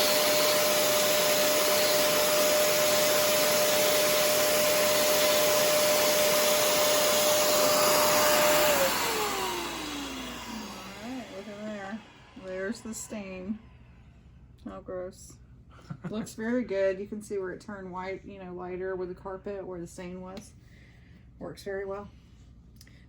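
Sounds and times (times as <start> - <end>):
carpet cleaner motor whining: 0.0 - 13.6.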